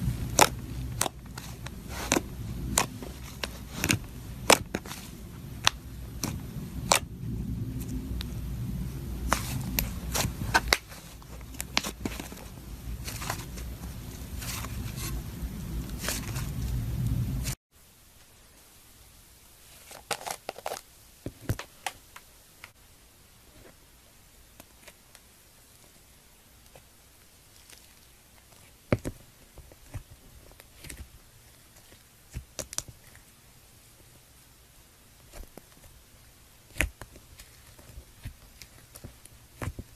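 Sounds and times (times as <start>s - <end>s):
crunchy slime crackling: 0.0s - 17.6s
steady low hum: 0.0s - 17.6s.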